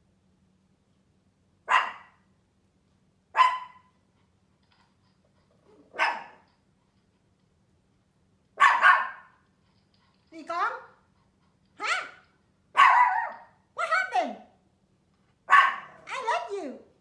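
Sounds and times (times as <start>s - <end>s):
small dog barking sharply: 1.7s - 2.2s, 3.4s - 3.9s, 5.9s - 6.4s, 8.6s - 9.3s, 11.8s - 12.2s, 12.8s - 13.5s, 15.5s - 16.0s
another dog barking: 8.6s - 9.3s, 12.8s - 13.5s, 15.5s - 16.1s.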